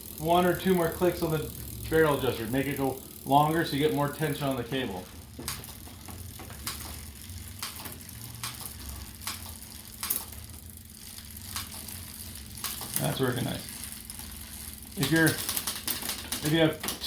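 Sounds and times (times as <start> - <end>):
bicycle chain and cassette running: 0.0 - 17.0.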